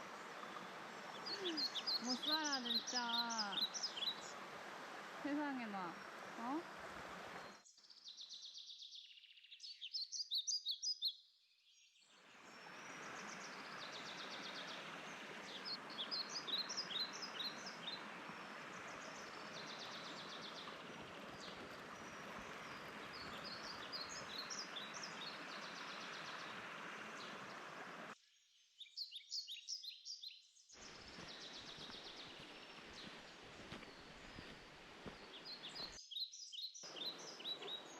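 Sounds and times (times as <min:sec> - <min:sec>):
mountain stream rushing: 0:00.0 - 0:07.6, 0:12.3 - 0:28.2, 0:30.8 - 0:36.0, 0:36.9 - 0:37.9
songbird chirping: 0:00.0 - 0:37.9.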